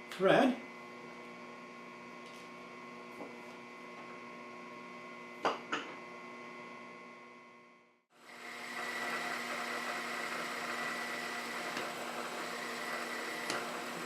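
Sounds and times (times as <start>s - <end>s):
electrical mains hum: 0.0s - 14.0s.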